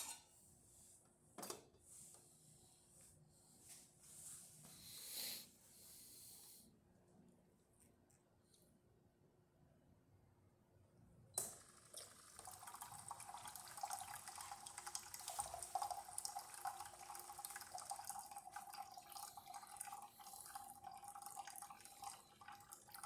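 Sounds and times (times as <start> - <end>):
hot water running into cup: 11.4 - 23.0.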